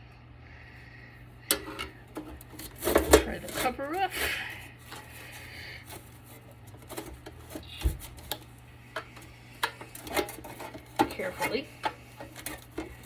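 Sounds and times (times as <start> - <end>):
tools clicking on plastic casing: 1.5 - 3.8, 4.9 - 13.0.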